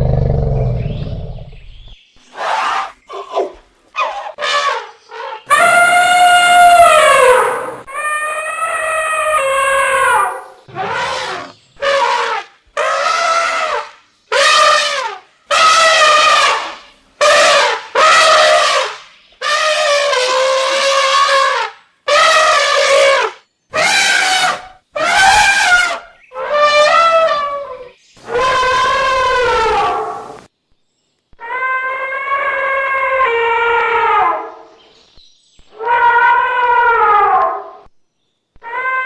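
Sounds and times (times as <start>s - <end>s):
elephant trumpeting: 4.0s - 30.4s, 35.8s - 37.8s.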